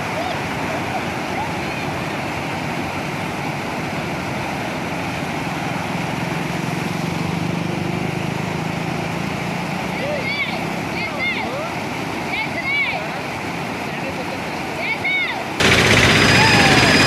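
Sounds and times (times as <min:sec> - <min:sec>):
water rushing: 0:00.0 - 0:07.1
autorickshaw engine humming: 0:02.3 - 0:11.3, 0:15.6 - 0:17.0.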